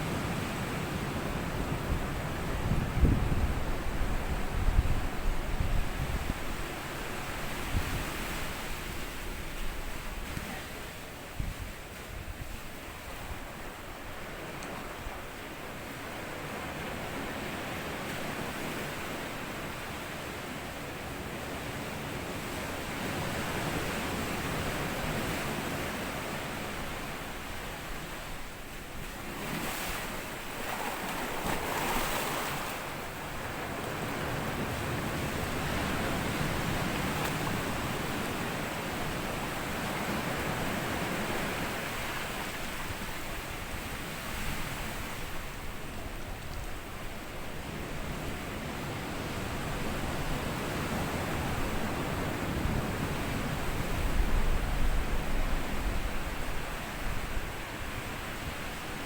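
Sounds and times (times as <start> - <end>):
ocean waves washing over sand: 0.0 - 59.0.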